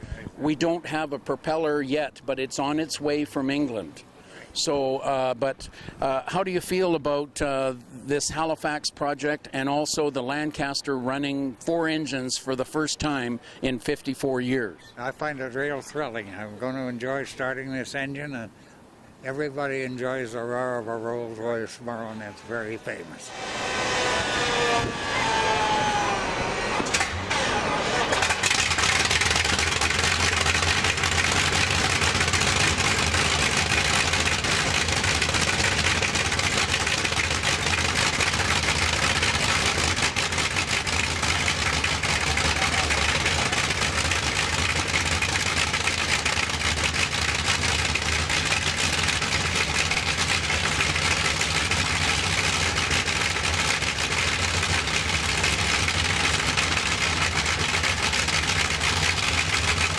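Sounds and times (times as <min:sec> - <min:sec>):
aircraft engine idling: 0:24.8 - 0:59.9.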